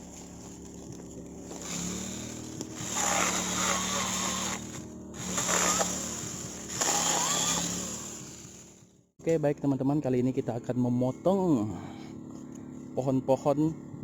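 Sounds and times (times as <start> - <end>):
chainsaw cutting wood: 0.0 - 8.9.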